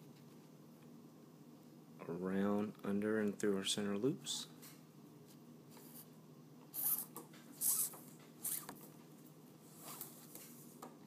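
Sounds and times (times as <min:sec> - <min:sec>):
faint steady hum: 0:00.0 - 0:11.0
cord swishing through loops: 0:06.8 - 0:08.7.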